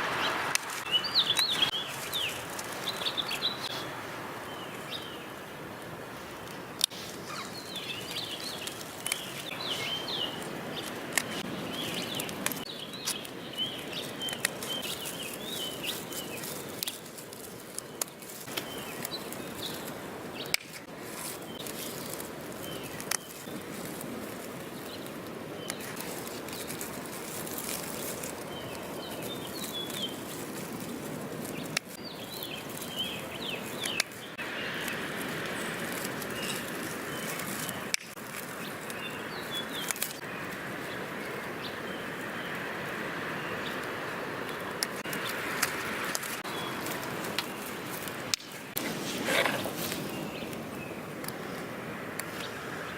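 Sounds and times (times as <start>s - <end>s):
small birds chirping: 0.0s - 5.5s, 6.8s - 52.9s
rustling foliage: 0.0s - 52.9s
pruning shears snipping: 0.1s - 3.2s, 6.5s - 24.0s, 25.6s - 40.2s, 44.5s - 51.4s.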